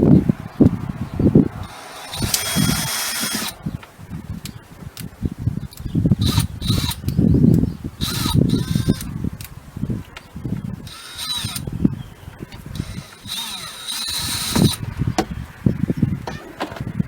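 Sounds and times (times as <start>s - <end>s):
power drill motor whine: 1.6s - 3.7s, 6.2s - 7.2s, 8.0s - 9.2s, 10.8s - 15.4s
knocks and handling sounds: 12.8s - 15.4s, 16.2s - 17.0s.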